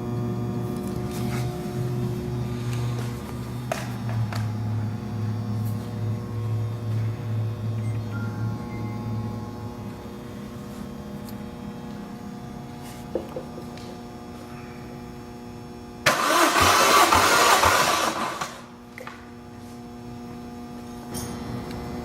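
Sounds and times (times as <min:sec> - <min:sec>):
steady low hum: 0:00.0 - 0:22.0
engine cranked by starter: 0:16.1 - 0:18.7.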